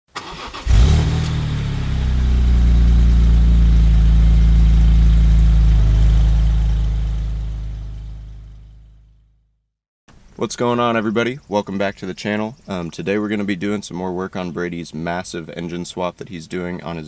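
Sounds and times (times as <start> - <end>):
car engine starting and idling: 0.1 - 9.1.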